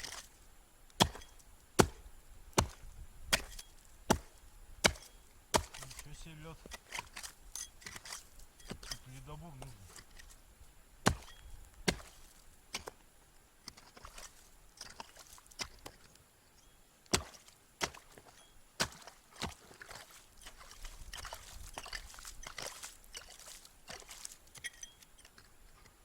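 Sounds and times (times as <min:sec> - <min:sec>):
chopping into ice: 0:01.0 - 0:02.0, 0:02.6 - 0:09.0, 0:11.1 - 0:12.2, 0:17.1 - 0:19.9.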